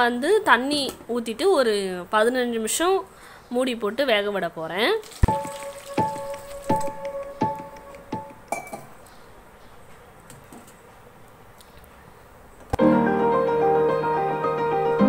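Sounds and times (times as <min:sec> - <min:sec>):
background piano music: 0:05.2 - 0:08.9, 0:12.8 - 0:15.0
cooking pot and lid clinking: 0:08.2 - 0:08.9.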